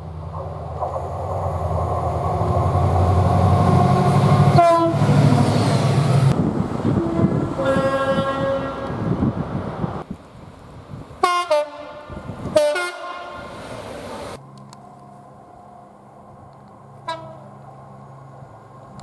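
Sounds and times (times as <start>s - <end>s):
diesel locomotive engine rumble: 0.0s - 19.0s
locomotive horn: 4.4s - 5.2s, 6.9s - 9.2s, 11.2s - 13.6s, 17.0s - 17.5s.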